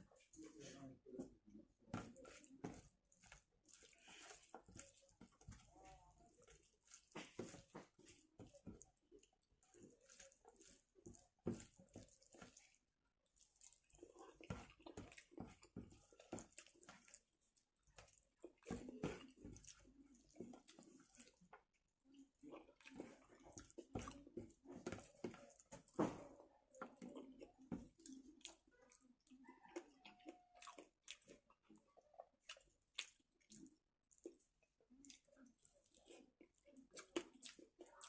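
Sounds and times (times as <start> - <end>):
wet chewing sounds: 0.0 - 38.0.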